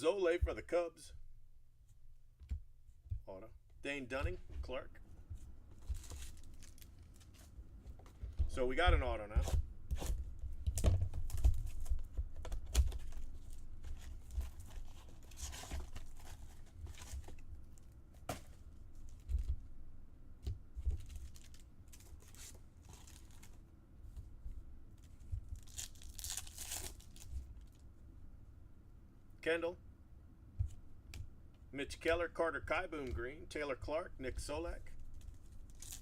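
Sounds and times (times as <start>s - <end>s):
foil wrappers tearing and crinkling: 5.8s - 7.4s, 21.0s - 23.6s, 25.6s - 27.8s, 35.7s - 36.0s
cards and packaging knocking: 9.3s - 17.4s.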